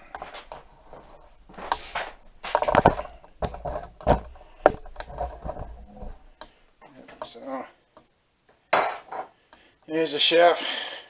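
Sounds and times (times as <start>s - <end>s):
objects knocking on workbench: 2.5s - 6.3s.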